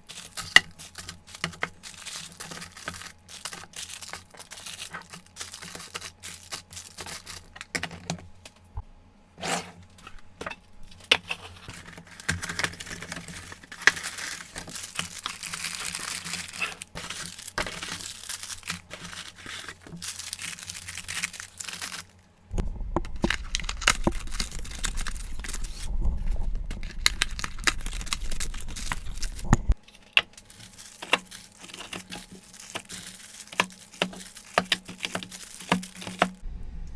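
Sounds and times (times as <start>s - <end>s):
plastic packaging crinkling: 0.0s - 8.5s, 9.8s - 22.4s, 23.0s - 36.4s
low rumble: 22.5s - 29.8s, 36.4s - 36.9s.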